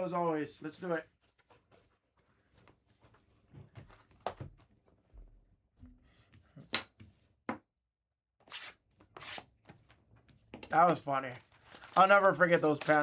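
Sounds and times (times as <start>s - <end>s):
packaging rustling: 10.6s - 13.0s.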